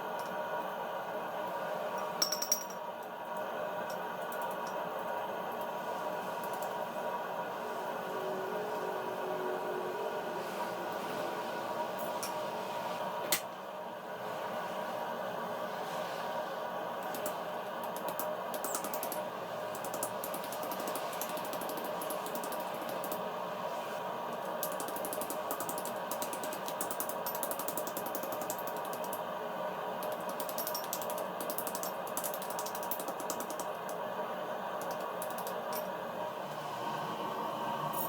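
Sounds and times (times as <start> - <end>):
machine humming: 3.2 - 13.2
rapid rattling clicks: 24.6 - 29.2, 30.0 - 34.0, 34.8 - 35.8.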